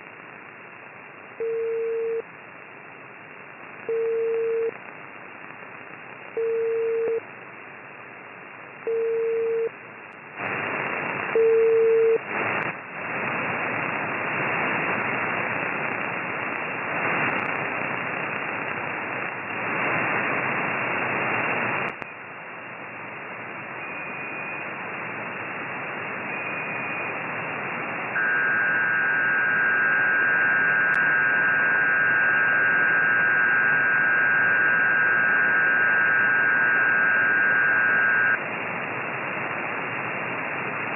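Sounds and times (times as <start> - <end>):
radio hiss surging: 0.0 - 40.9
short low beeps: 28.2 - 38.4.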